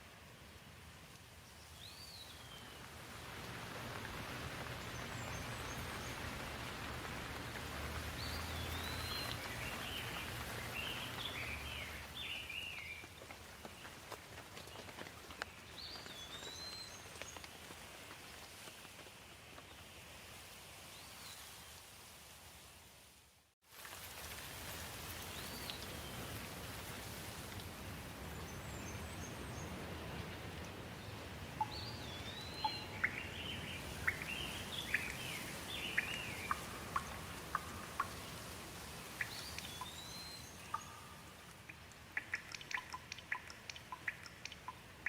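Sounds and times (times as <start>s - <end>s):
steady rain: 0.0s - 45.0s
birds chirping: 1.9s - 13.9s, 28.3s - 45.0s
sharp drip taps: 36.0s - 38.3s, 40.7s - 45.0s.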